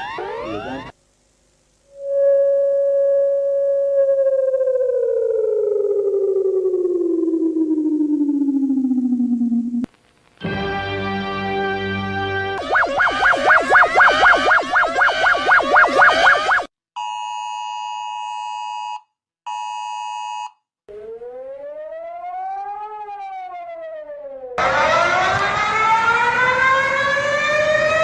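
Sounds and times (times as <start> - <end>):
buzzy synthesized alarm tone: 0.0 - 0.9, 1.9 - 9.8, 12.6 - 16.7
fast warbling siren: 0.0 - 0.9, 1.9 - 9.9, 12.6 - 16.7, 20.9 - 28.0
siren wail: 0.0 - 0.9, 1.9 - 9.9, 12.6 - 16.7, 20.9 - 28.0.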